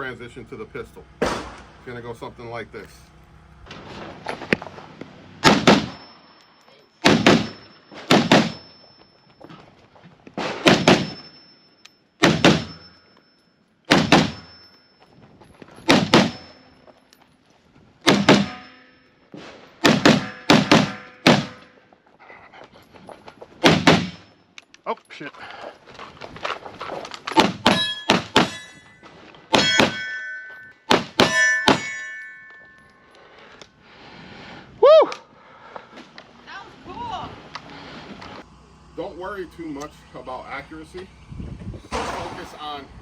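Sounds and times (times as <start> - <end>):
rifle shots with echo: 1.2 - 1.8, 41.9 - 42.8.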